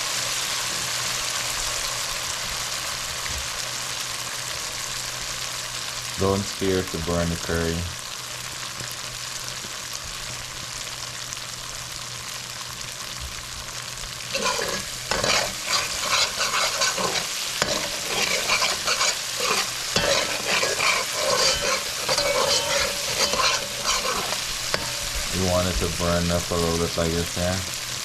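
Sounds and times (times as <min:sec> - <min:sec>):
paste sizzling in a pot: 0:00.0 - 0:28.0
spoon scraping a pot: 0:14.3 - 0:25.8.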